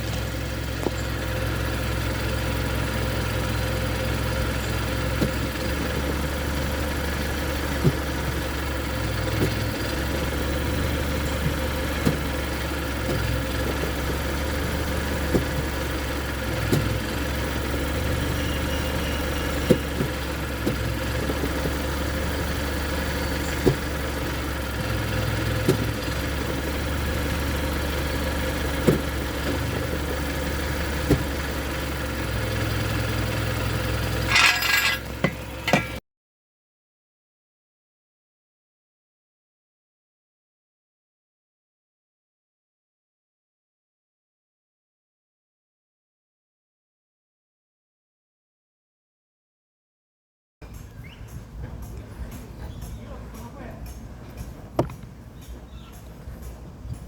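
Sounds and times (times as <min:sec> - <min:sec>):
car engine idling: 0:00.0 - 0:36.0, 0:50.6 - 0:57.0
transmission clunk: 0:34.1 - 0:36.0.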